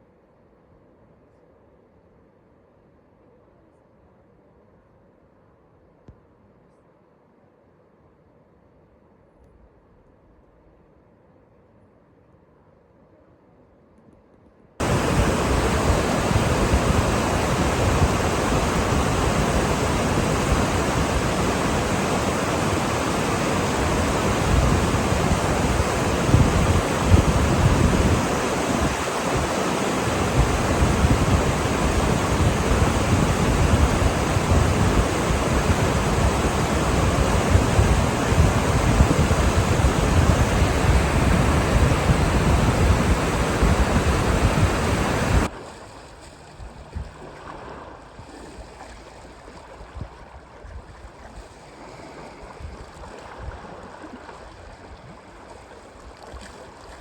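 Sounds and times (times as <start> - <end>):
wind buffeting microphone: 14.8 - 45.5
rushing water roar: 14.8 - 49.8.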